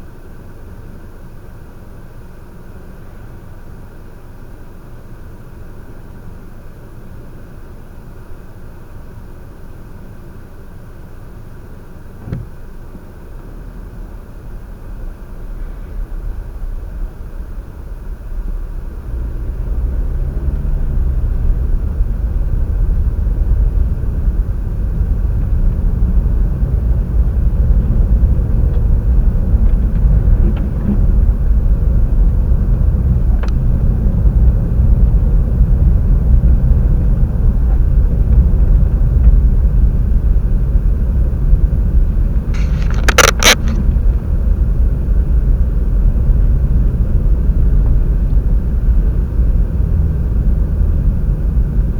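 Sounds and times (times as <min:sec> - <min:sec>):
sharp clicks: 0:42.6 - 0:43.9.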